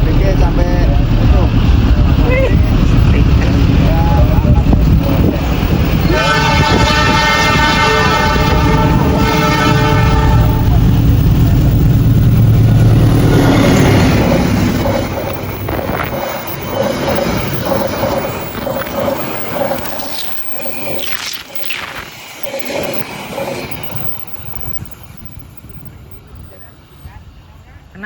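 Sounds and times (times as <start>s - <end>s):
locomotive engine rumbling: 0.0s - 28.0s
train wheels clacking on rail joints: 0.1s - 21.0s
locomotive horn chord: 6.1s - 10.9s.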